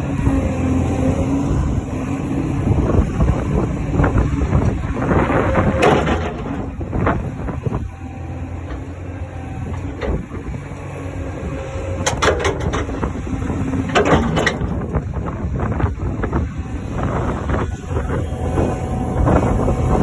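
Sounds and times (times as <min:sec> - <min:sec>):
diesel engine running: 0:00.0 - 0:20.0
sharp metal knocks and clanks: 0:12.0 - 0:13.0, 0:13.9 - 0:14.8.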